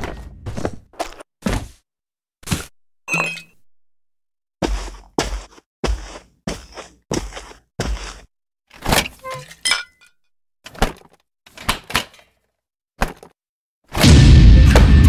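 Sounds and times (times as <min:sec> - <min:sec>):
cartoon knocks and clinks: 0:03.1 - 0:03.6, 0:09.0 - 0:10.1.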